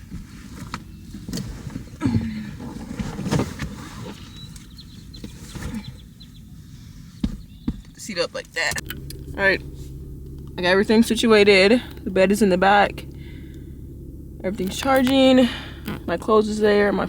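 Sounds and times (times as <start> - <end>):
rustling and knocks of handling: 0.0 - 6.0, 7.0 - 8.0
low rumble: 8.6 - 17.0.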